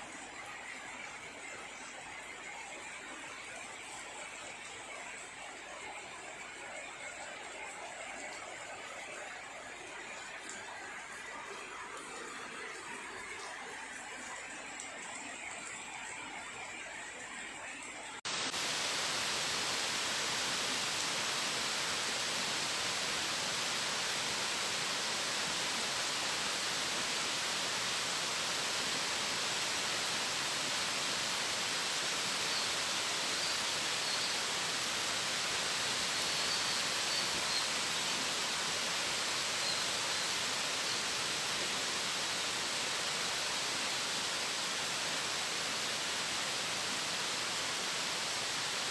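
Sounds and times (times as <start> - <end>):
heavy pouring rain: 18.3 - 48.9.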